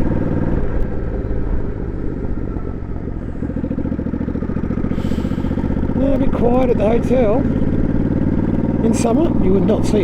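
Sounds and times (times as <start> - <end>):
motorcycle engine running: 0.0 - 10.0.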